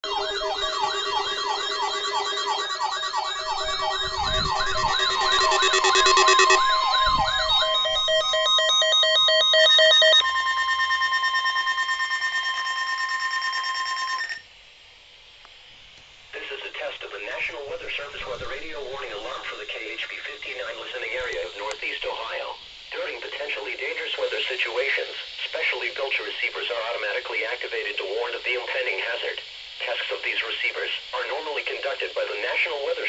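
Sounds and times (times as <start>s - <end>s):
electronic sirens wailing and yelping: 0.0s - 14.4s
siren switching between two pitches: 0.0s - 14.4s
steady high tone: 0.0s - 14.4s, 17.3s - 22.2s.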